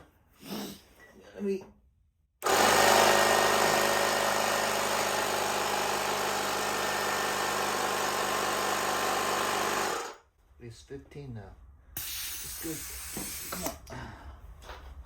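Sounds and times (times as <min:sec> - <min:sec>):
air compressor running: 0:02.4 - 0:10.2, 0:12.0 - 0:13.8.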